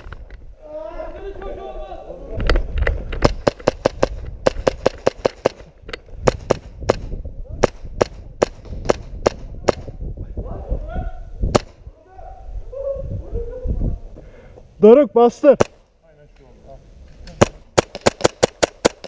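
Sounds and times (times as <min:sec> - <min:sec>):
rapid airsoft gunfire: 0:03.2 - 0:09.9, 0:17.4 - 0:19.0.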